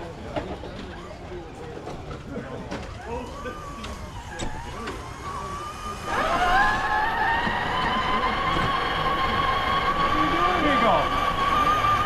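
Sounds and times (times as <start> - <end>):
electric motor whining: 3.0 - 12.0.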